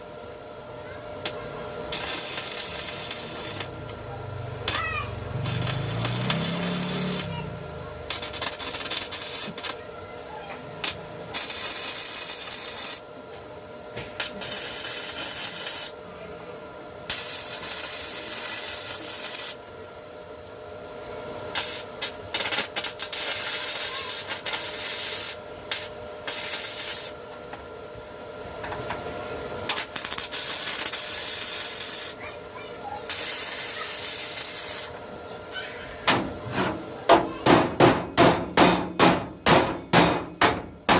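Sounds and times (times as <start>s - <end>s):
faint hum: 0.0s - 40.9s.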